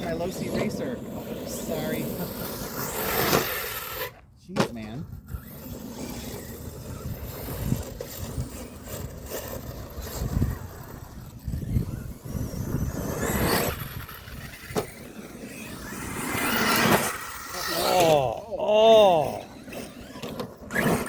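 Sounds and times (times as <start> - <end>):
continuous low rumble: 0.0 - 21.0
tyres on dirt: 0.0 - 21.0
electric motor whine: 5.1 - 18.4
sharp knocks of landings: 13.1 - 15.1.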